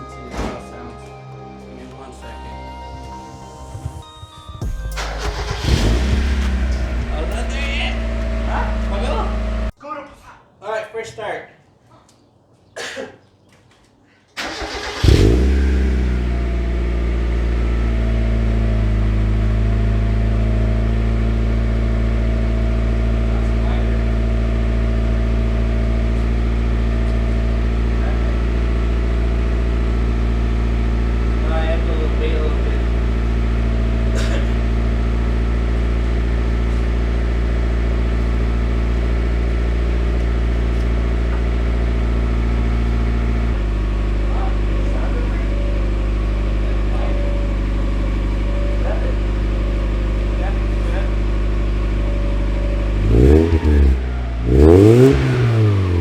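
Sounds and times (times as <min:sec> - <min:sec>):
starter cranking: 0:04.6 - 0:09.7
car engine revving and idling: 0:04.6 - 0:09.8, 0:14.4 - 0:56.0.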